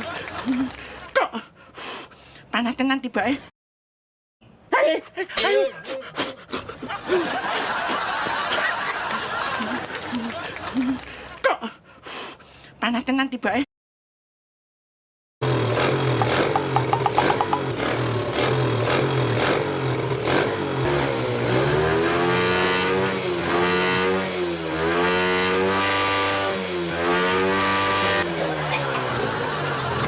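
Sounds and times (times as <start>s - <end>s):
motorcycle engine revving: 15.4s - 30.0s.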